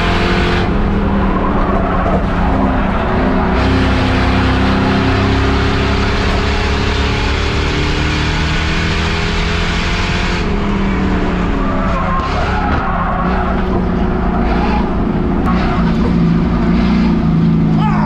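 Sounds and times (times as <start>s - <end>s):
race car engine running hard: 0.0s - 18.0s
tires skidding and squealing: 0.0s - 18.0s.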